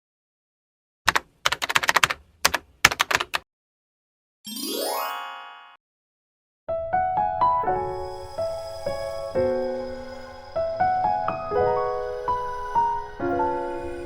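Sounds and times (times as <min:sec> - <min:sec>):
keyboard typing clicks: 0:01.1 - 0:03.4
piano music: 0:04.5 - 0:05.8, 0:06.7 - 0:14.0.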